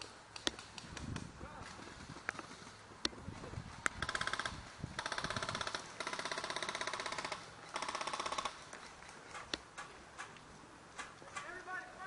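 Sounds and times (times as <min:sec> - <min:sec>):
airsoft rifle firing bursts: 0:04.0 - 0:08.6.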